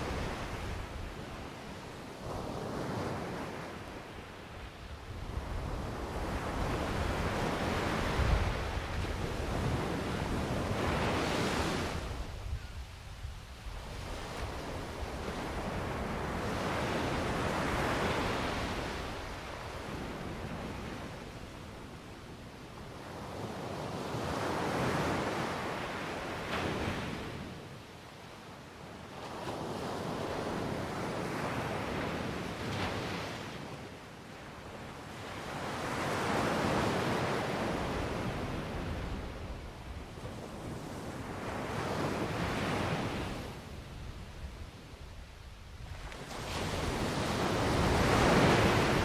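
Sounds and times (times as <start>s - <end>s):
ocean waves washing ashore: 0.0s - 49.0s
sea waves surging onto shore: 45.9s - 49.0s.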